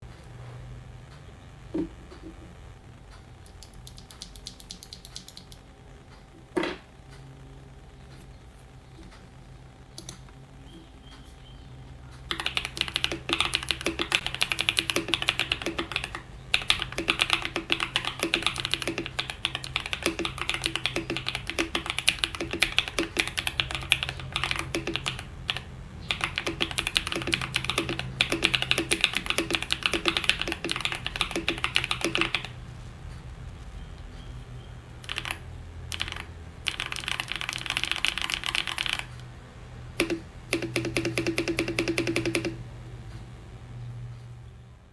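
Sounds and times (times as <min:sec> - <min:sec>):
rapid mechanical keyboard typing: 0:03.4 - 0:05.6, 0:12.3 - 0:33.6, 0:35.0 - 0:39.3, 0:40.0 - 0:42.7.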